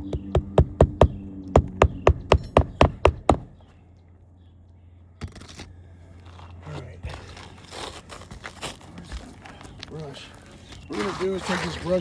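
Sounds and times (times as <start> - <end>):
hammer striking nail: 0.0 - 3.6.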